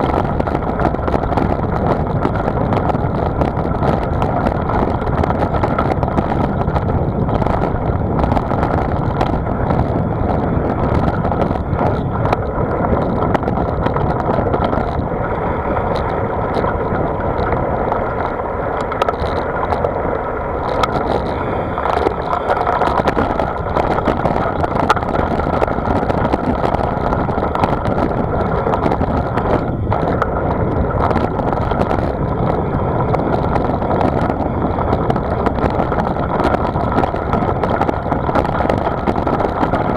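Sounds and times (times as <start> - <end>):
small clicks and rattles: 0.0 - 39.9
wind and road noise: 0.0 - 39.9.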